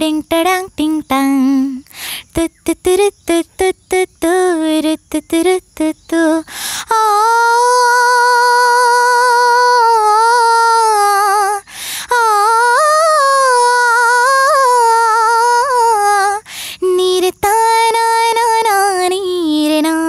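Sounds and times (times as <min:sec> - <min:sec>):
woman singing unaccompanied: 0:00.0 - 0:20.0
singer breathing in: 0:01.9 - 0:02.3, 0:06.5 - 0:06.9, 0:11.7 - 0:12.1, 0:16.4 - 0:16.8.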